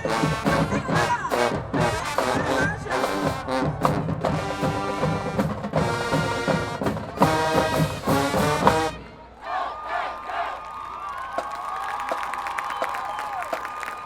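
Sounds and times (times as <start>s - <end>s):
marching band brass and drums: 0.0s - 9.7s
crowd cheering and whooping: 9.4s - 14.0s.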